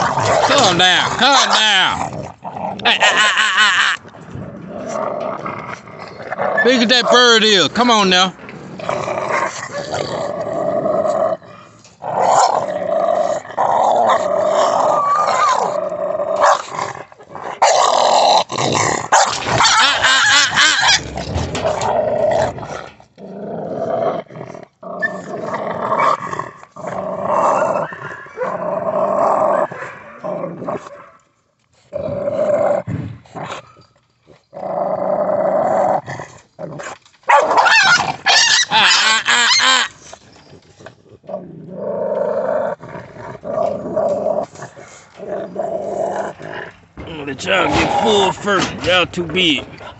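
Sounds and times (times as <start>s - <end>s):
dogs growling: 0.0s - 31.2s, 31.8s - 49.9s
dog barking: 37.3s - 38.6s.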